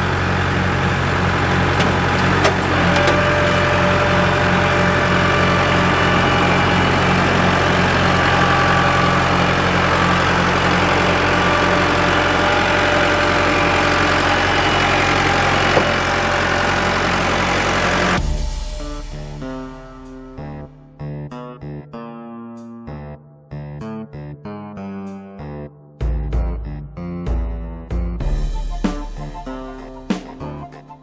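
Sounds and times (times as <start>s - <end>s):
diesel tractor engine running: 0.0s - 18.6s.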